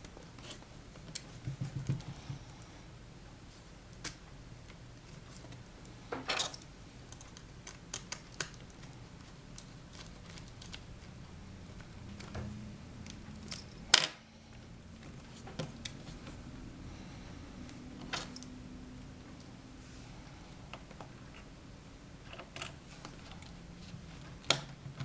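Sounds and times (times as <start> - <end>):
small clicks handling laptop parts: 7.1 - 10.9.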